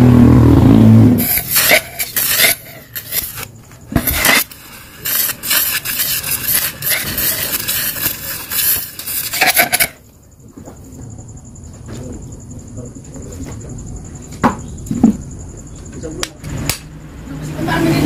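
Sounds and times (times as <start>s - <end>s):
metallic scraping and rubbing: 1.1s - 10.0s.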